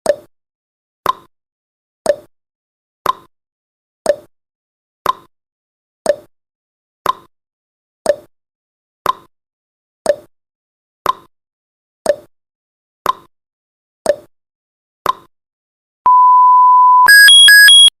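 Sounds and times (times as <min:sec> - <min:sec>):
long beep: 0:16.1 - 0:18.0
two-tone alarm: 0:16.1 - 0:18.0.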